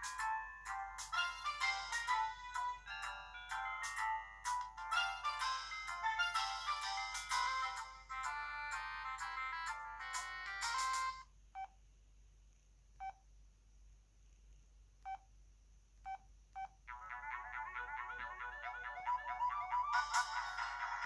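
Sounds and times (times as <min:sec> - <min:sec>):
polyphonic phone ringtone: 0:00.0 - 0:11.2, 0:16.9 - 0:21.0.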